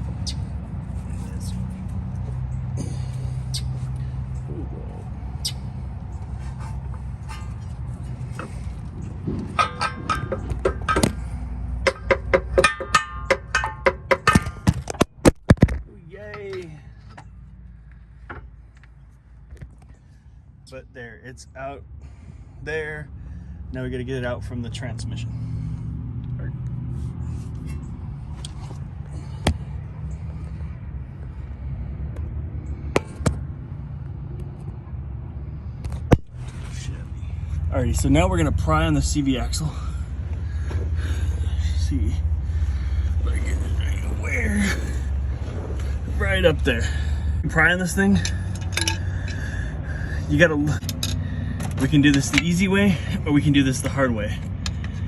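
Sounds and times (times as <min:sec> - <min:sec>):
steady low rumble: 0:00.0 - 0:55.0
hammer striking metal shaft: 0:09.4 - 0:14.8
sharp metallic knocks of tools: 0:09.4 - 0:15.1, 0:48.1 - 0:49.5, 0:50.8 - 0:52.6.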